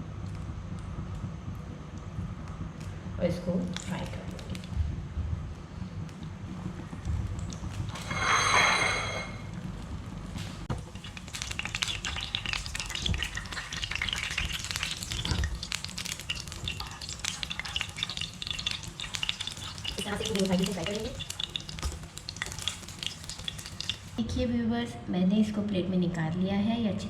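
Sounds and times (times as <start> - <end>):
bread sizzling in hot oil: 7.1 - 9.6, 10.6 - 24.2
oil crackling and spitting: 10.7 - 24.2.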